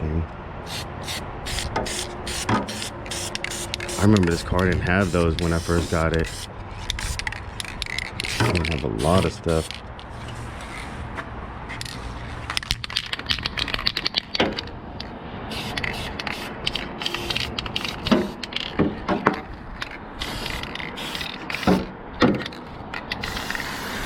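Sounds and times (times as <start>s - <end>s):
spray can rattling: 0.7s - 10.1s, 15.5s - 18.8s, 20.2s - 21.8s, 22.5s - 24.0s.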